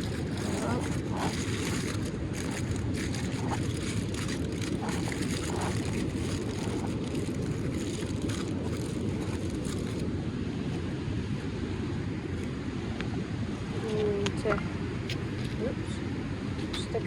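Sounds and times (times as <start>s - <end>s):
faint crackles: 0.0s - 10.1s
wind buffeting microphone: 0.0s - 10.2s.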